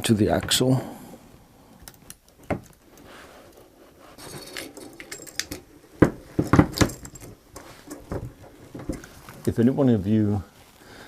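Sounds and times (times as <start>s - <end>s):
metal parts clicking and knocking: 4.2s - 9.5s.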